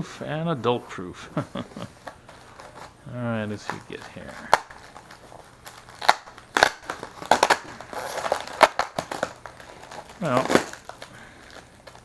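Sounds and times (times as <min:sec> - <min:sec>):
packaging crackling and crinkling: 0:01.5 - 0:12.0.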